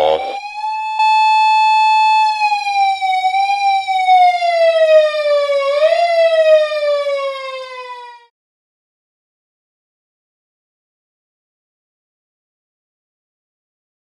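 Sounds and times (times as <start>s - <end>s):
police car siren wailing: 0.0s - 8.3s.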